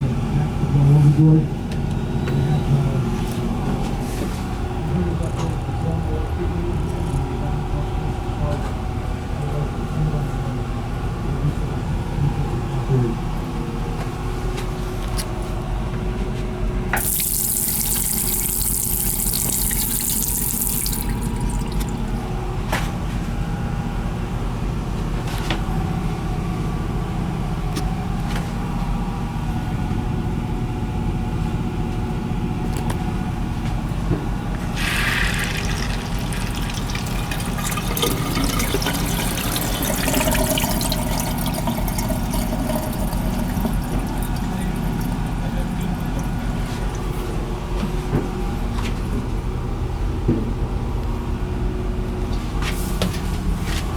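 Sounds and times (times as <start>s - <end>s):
water running from a tap: 17.0s - 22.2s, 34.7s - 47.2s.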